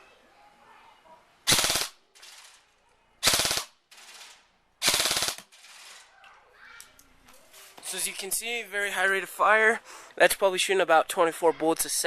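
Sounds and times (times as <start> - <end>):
airsoft gun full-auto bursts: 1.5 - 2.4, 3.2 - 6.1.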